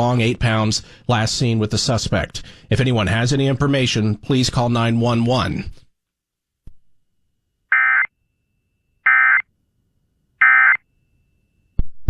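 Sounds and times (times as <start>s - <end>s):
buzzy digital data tones: 7.7s - 8.1s, 9.1s - 9.4s, 10.4s - 10.8s.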